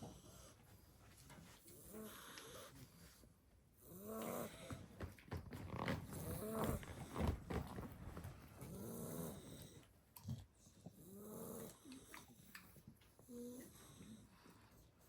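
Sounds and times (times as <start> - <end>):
puppy snoring: 3.8 - 5.0, 5.6 - 12.6, 13.2 - 14.4.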